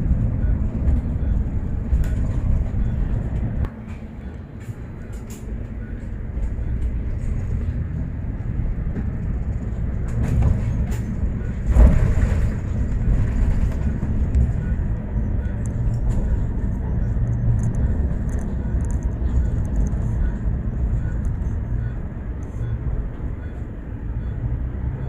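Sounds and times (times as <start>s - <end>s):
bus engine and road rumble: 0.0s - 25.0s.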